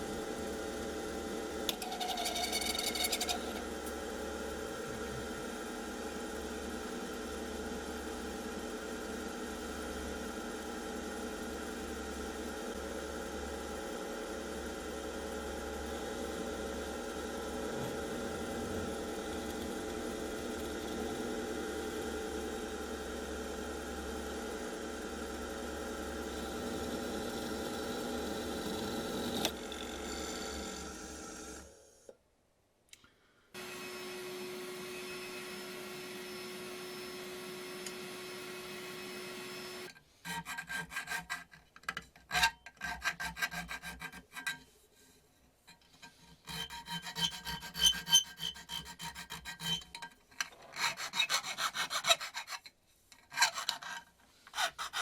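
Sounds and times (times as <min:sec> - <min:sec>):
mechanical hum with low rumble: 0:00.0 - 0:32.1.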